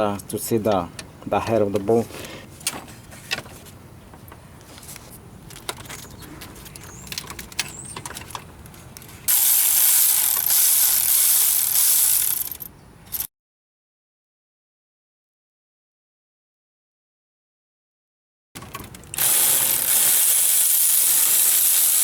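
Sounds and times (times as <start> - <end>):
loud hissing whir: 9.3 - 13.3, 19.2 - 22.0.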